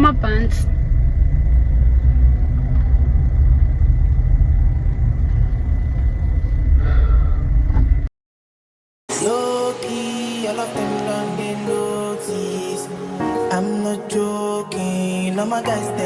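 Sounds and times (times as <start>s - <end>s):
car interior rumble: 0.0s - 8.1s.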